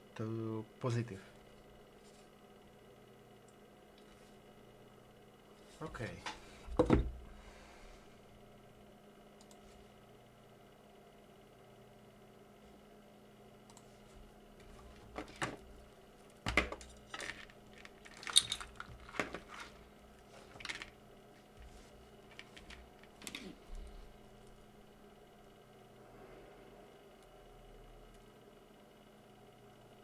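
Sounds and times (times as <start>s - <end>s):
faint electrical hum: 0.0s - 30.0s
clatter of small tools and parts: 16.5s - 21.0s.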